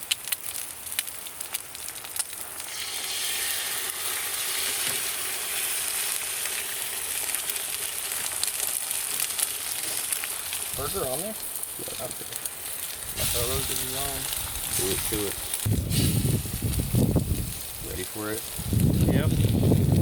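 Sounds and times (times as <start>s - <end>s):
crackling clicks: 0.0s - 2.7s
food sizzling on a griddle: 0.0s - 20.0s.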